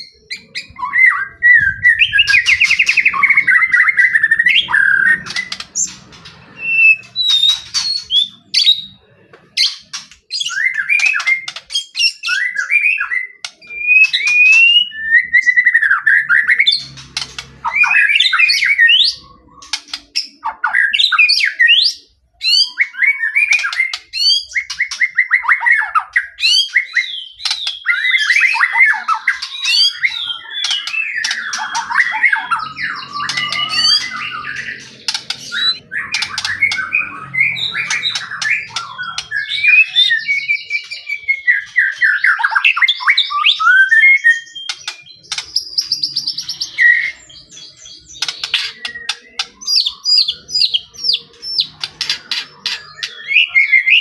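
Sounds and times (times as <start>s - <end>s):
bird singing whistles and trills: 0.0s - 9.0s, 9.6s - 54.0s.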